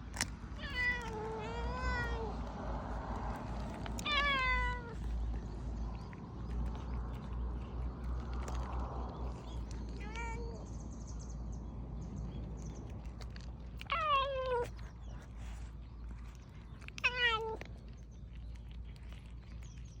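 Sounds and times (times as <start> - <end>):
cat meowing: 0.6 - 2.5, 4.0 - 5.0, 10.0 - 10.7, 13.8 - 14.8, 16.9 - 17.7.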